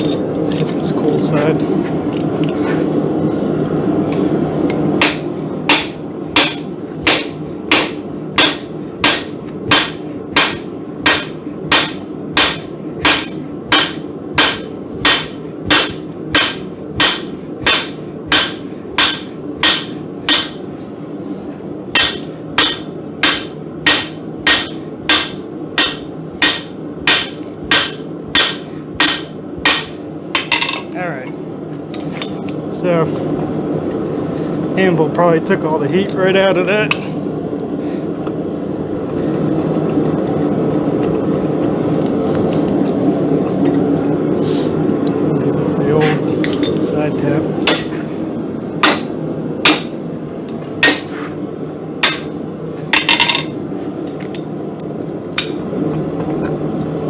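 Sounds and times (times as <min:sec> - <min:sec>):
hammer striking steel on anvil: 0:05.0 - 0:20.7, 0:22.0 - 0:31.0, 0:47.7 - 0:48.1, 0:48.8 - 0:50.0, 0:50.8 - 0:51.3, 0:52.0 - 0:52.4, 0:53.0 - 0:53.6.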